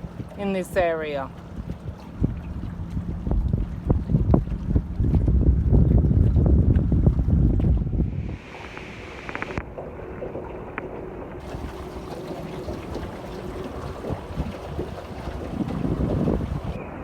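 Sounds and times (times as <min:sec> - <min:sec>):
water lapping: 0:00.0 - 0:16.8
wind: 0:00.0 - 0:17.0
faint steady hum: 0:08.1 - 0:17.0.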